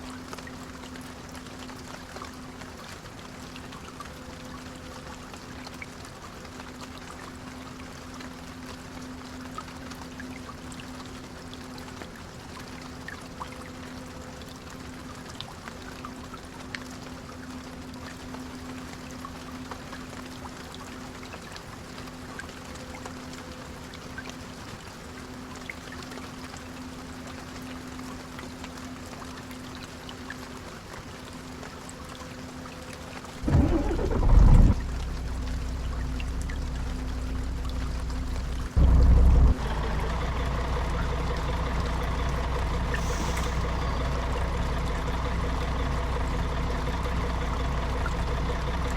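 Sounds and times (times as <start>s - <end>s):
rain hissing on a bus: 0.0s - 48.9s
bus engine droning: 33.4s - 48.9s.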